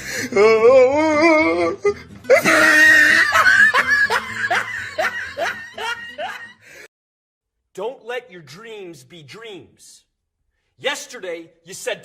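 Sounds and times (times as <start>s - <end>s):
voice-like wail: 0.3s - 5.6s.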